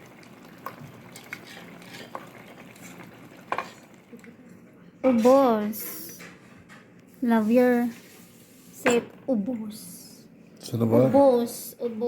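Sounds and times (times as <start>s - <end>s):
cutlery clinking against a bowl: 3.5s - 3.9s.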